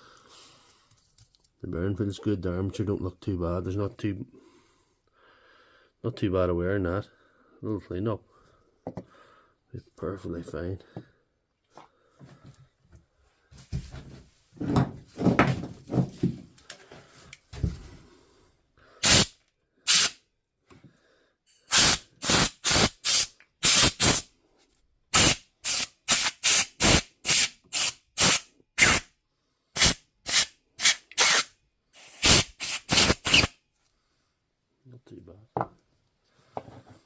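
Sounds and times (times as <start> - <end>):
handling and rubbing noises: 13.5 - 18.1
hissing spray blasts: 19.0 - 19.3, 19.9 - 20.2, 21.7 - 24.3, 25.1 - 29.0, 29.8 - 33.5.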